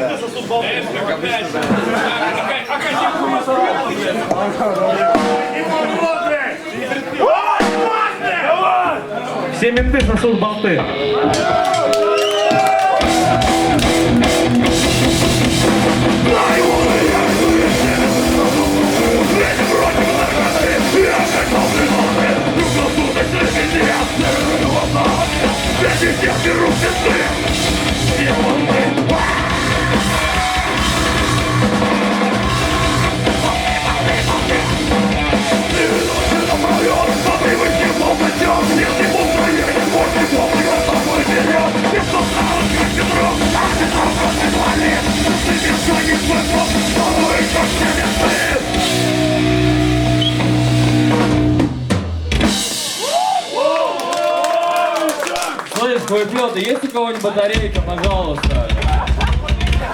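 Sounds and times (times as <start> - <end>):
live rock band playing: 5.0 - 6.0, 7.6 - 8.2, 9.8 - 53.6.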